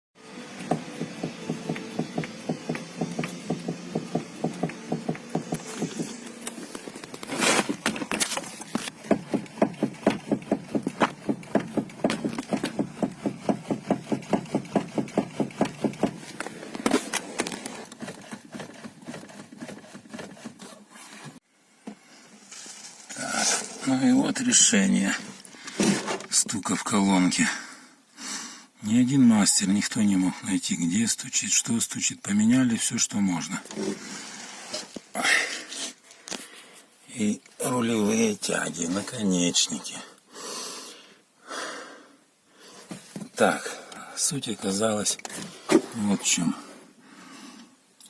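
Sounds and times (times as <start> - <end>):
steering column knocking: 9.1 - 16.2.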